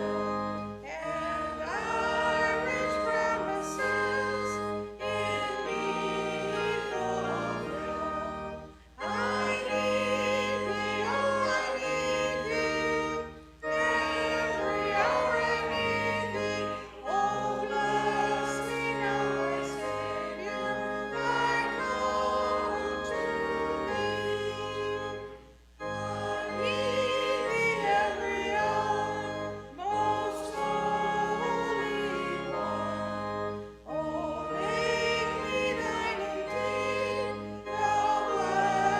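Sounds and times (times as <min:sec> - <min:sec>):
instrumental accompaniment: 0:00.0 - 0:38.9
voices singing a hymn: 0:00.0 - 0:38.9.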